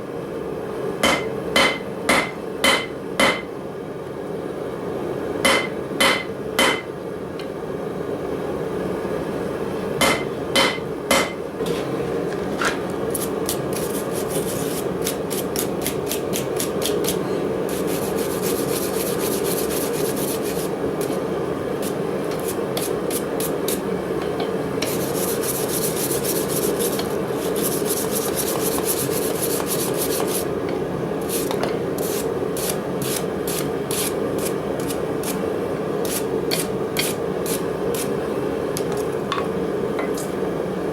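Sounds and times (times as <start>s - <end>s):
steady hum: 0.0s - 40.9s
filing strokes on metal: 13.7s - 20.7s, 24.8s - 30.5s.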